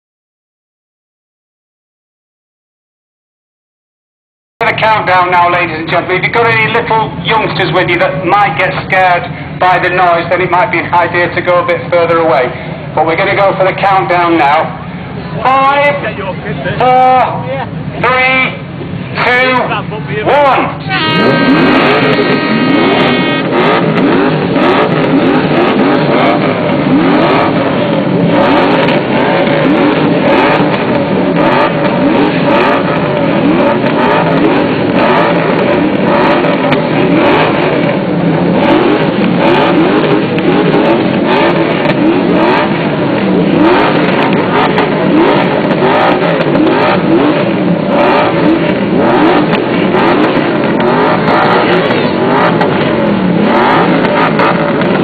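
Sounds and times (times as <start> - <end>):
exhaust crackles and pops: 4.6 - 55.0
many car engines revving: 4.6 - 55.0.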